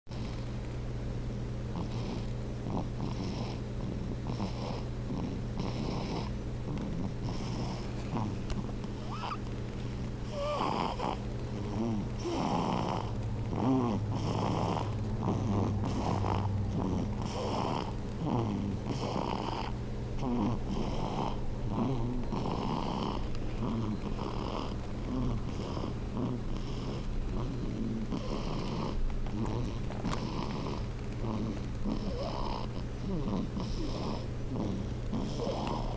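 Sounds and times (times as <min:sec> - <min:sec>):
infant snoring: 0:00.1 - 0:00.4, 0:01.7 - 0:35.9.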